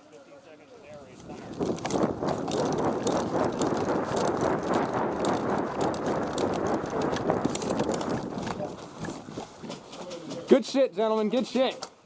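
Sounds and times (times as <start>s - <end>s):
footsteps of person running: 1.2s - 10.6s
gear rattling: 1.5s - 10.3s.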